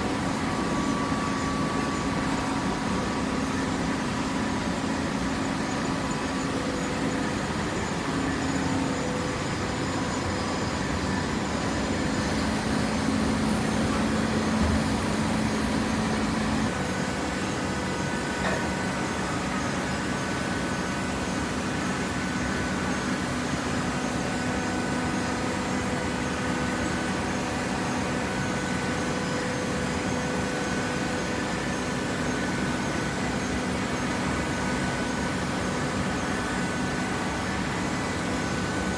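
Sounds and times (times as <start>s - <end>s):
low machine hum: 0.0s - 22.0s
shredder and baler machinery din: 12.3s - 16.7s.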